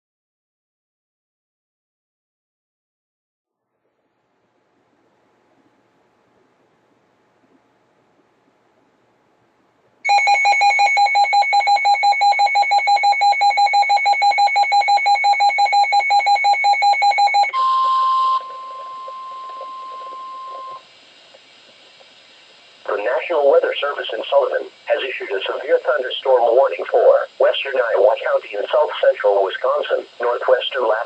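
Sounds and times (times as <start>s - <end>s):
electronic alarm beeping rapidly: 10.1s - 20.8s
steady radio warning tone: 10.1s - 20.9s, 22.8s - 31.0s
faint radio hiss: 17.7s - 31.0s
burst of static: 21.9s - 31.0s.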